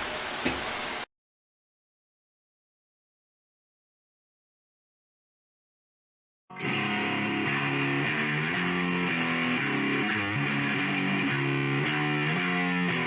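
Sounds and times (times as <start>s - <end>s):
distorted electric guitar music: 6.5s - 13.0s.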